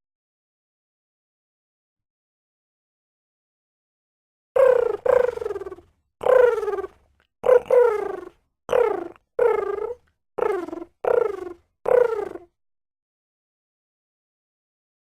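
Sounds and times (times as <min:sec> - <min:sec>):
pigeon cooing: 0:04.6 - 0:12.5.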